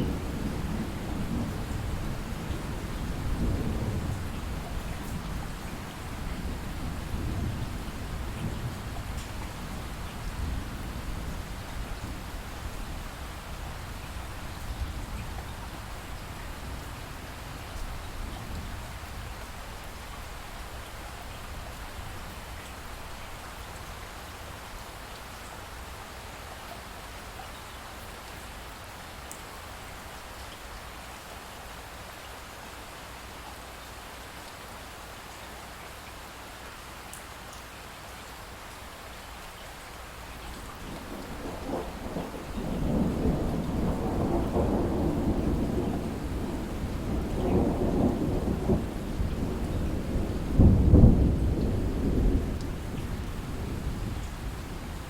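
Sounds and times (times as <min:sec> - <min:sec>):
steady rainfall: 0:00.0 - 0:55.0
thunder rumbling: 0:40.8 - 0:55.0.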